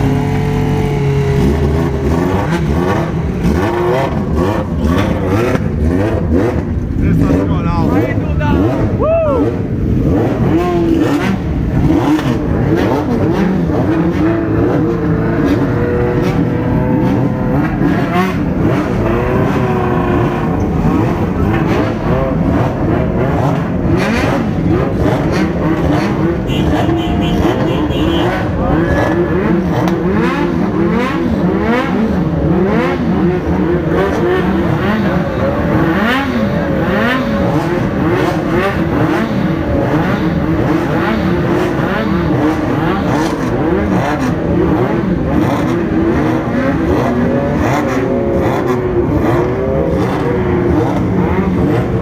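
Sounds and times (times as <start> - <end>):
motorcycle engines revving: 0.0 - 52.0.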